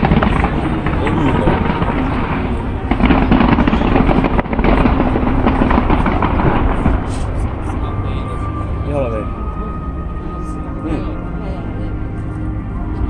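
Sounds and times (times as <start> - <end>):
fireworks crackling bangs: 0.0 - 8.0
low rumble: 0.0 - 13.0.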